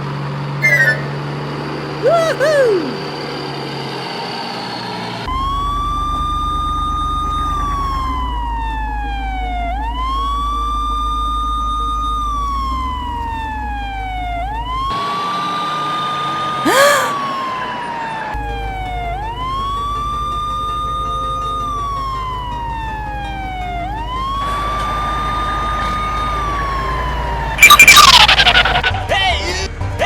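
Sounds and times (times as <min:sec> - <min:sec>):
police siren wailing: 0:05.3 - 0:29.0
low engine hum: 0:18.4 - 0:28.9.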